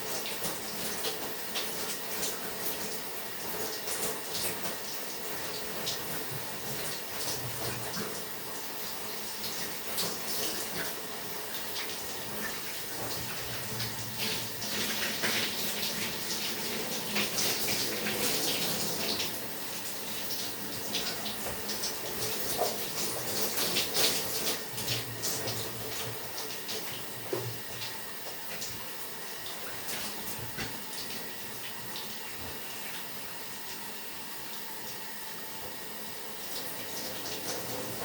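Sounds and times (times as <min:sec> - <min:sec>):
shower spray splashing: 0:03.5 - 0:33.2.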